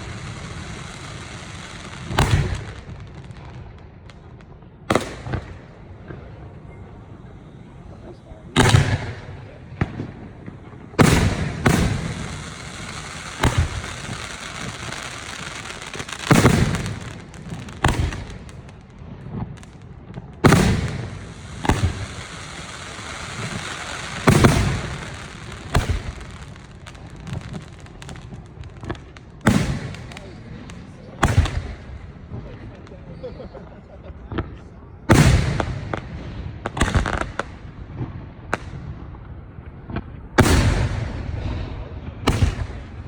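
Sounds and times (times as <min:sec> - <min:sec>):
firework shells booming: 0:00.0 - 0:33.0, 0:34.3 - 0:43.0
firework crackle: 0:00.0 - 0:33.6.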